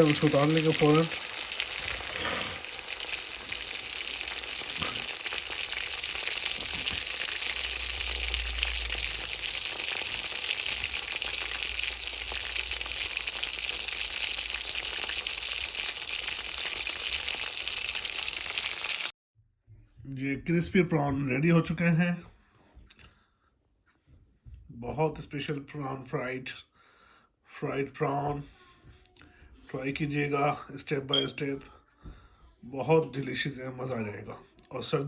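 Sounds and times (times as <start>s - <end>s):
prawns sizzling in hot oil: 0.0s - 19.1s.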